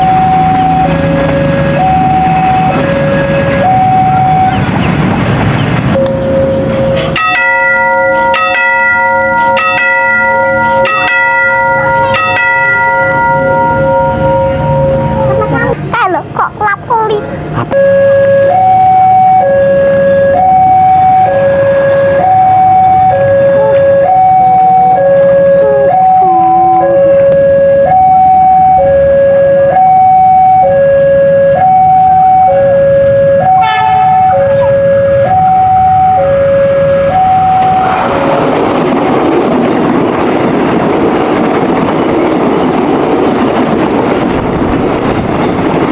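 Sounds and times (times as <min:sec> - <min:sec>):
level crossing warning bell: 0:00.0 - 0:04.8, 0:05.9 - 0:38.9
low rumble of engines: 0:00.0 - 0:45.9
horn blast: 0:17.6 - 0:38.5.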